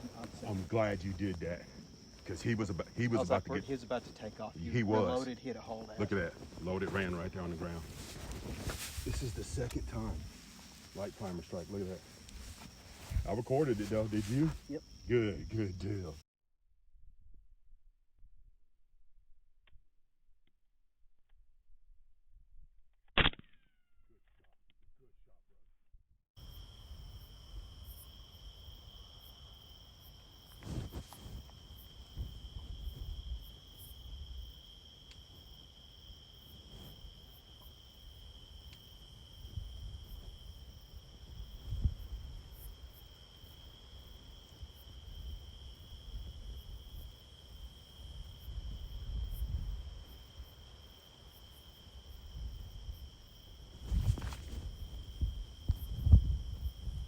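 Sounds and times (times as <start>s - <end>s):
night insects trilling: 0.0s - 16.2s, 26.4s - 57.0s
microphone handling rumbles: 6.3s - 11.2s, 12.0s - 14.7s, 30.6s - 33.5s, 41.4s - 42.5s, 53.7s - 57.0s.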